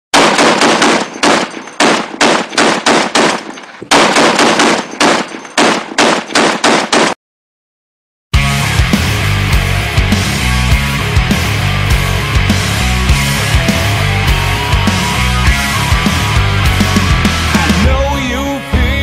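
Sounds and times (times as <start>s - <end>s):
rapid gunfire: 0.2s - 7.2s
heavy rock music: 8.4s - 19.0s.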